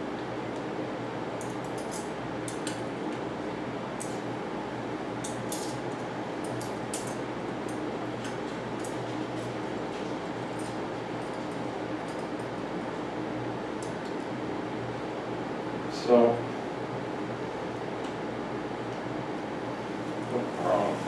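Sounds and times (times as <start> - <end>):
steady background hum: 0.0 - 21.0
light metallic clicks and clinks: 5.2 - 13.0.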